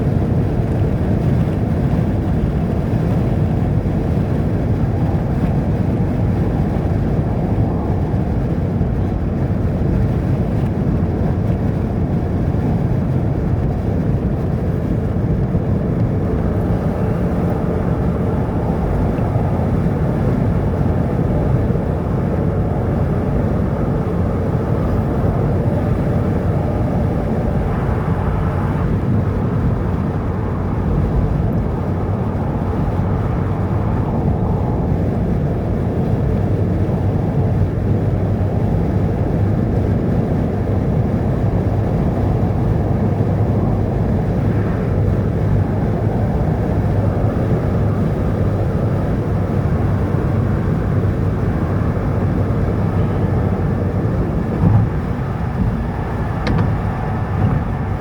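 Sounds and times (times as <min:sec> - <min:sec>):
car engine and tyre noise: 0:00.0 - 0:58.0
constant low hum: 0:00.0 - 0:58.0.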